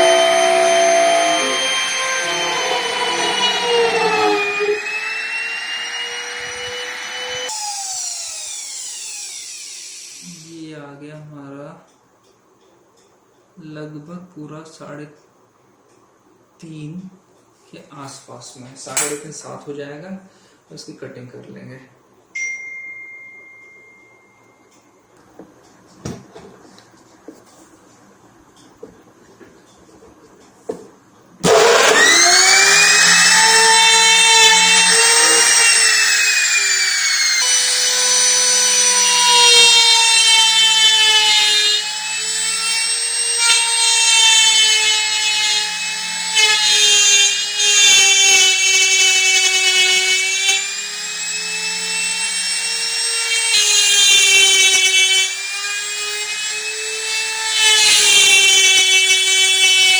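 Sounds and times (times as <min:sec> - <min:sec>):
power tool cutting wood: 0:00.0 - 0:10.5, 0:31.4 - 0:59.9.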